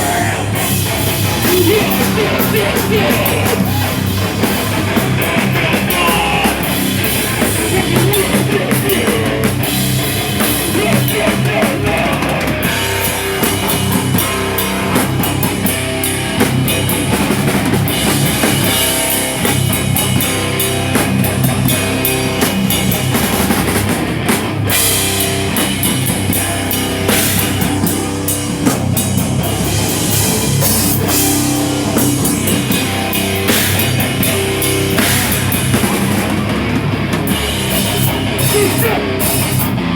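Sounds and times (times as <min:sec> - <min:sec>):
rock band playing: 0:00.0 - 0:39.9.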